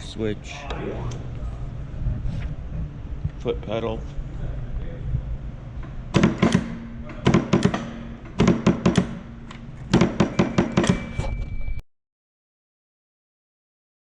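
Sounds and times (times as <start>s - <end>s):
low machine hum: 0.0s - 11.8s
metal press clunking: 6.1s - 11.4s.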